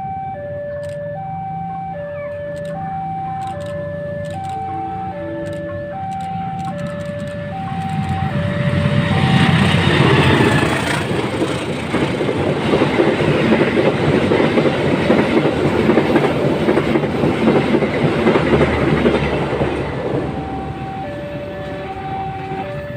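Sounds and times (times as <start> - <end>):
two-tone level-crossing alarm: 0.0 - 11.0, 19.0 - 22.9
train wheels clattering over rails: 7.8 - 20.5.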